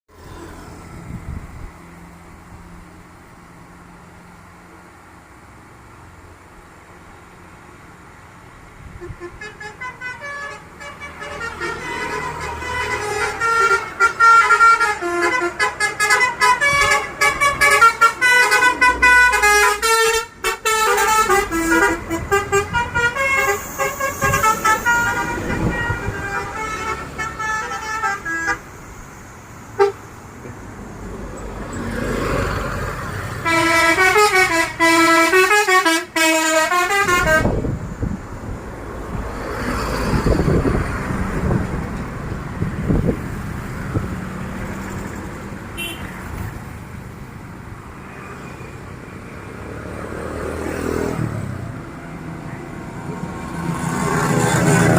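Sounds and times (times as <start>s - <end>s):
bus engines running and passing: 0.1s - 54.9s
musical bus horn tune: 8.9s - 28.6s, 29.8s - 30.1s, 33.4s - 37.8s, 45.8s - 46.2s.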